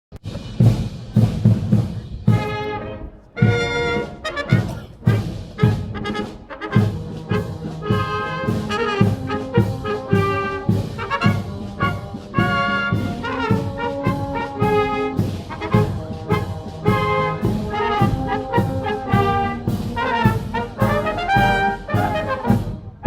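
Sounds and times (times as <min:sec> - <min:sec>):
low drum beat: 0:00.1 - 0:02.8, 0:03.4 - 0:23.0
marching brass band: 0:00.1 - 0:23.0.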